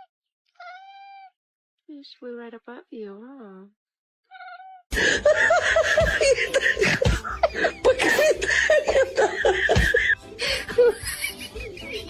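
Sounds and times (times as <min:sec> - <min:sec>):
cat meowing: 0:00.0 - 0:01.4, 0:04.3 - 0:04.8
people laughing: 0:05.0 - 0:12.0.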